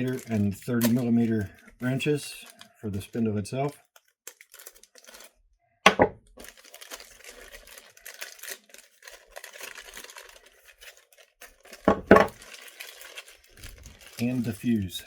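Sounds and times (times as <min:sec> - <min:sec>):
plastic packaging rustling: 0:00.0 - 0:05.4, 0:06.3 - 0:15.0
items thumping down: 0:05.9 - 0:06.2, 0:11.9 - 0:12.4.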